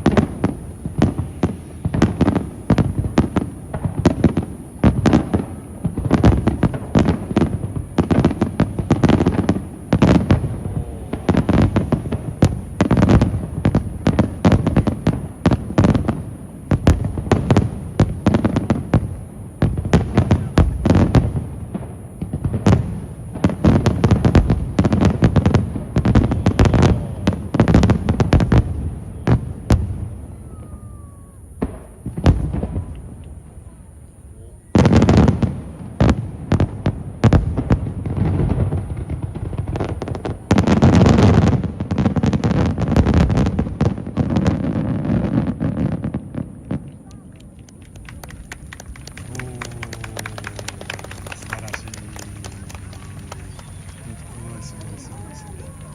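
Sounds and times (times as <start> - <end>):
fireworks shells bursting: 46.6 - 55.9.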